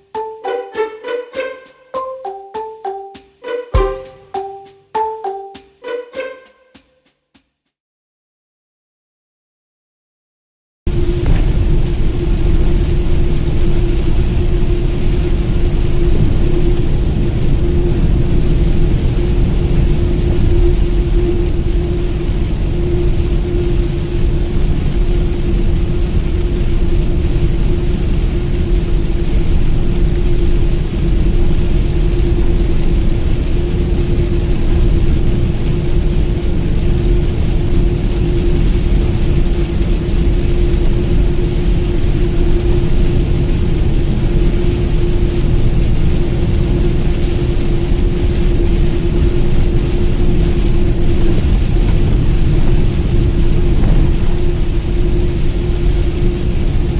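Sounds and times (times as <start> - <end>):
constant whine: 10.9 - 56.9
truck engine and road rumble: 49.4 - 56.7.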